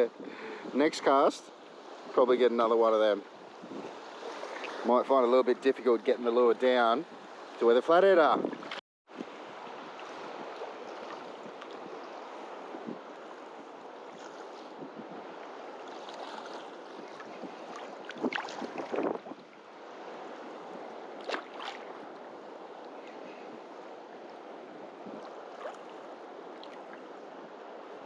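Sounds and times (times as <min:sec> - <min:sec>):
small waves washing on beach: 0:00.0 - 0:28.0
wind buffeting microphone: 0:03.5 - 0:04.6, 0:08.2 - 0:24.0, 0:24.7 - 0:25.8.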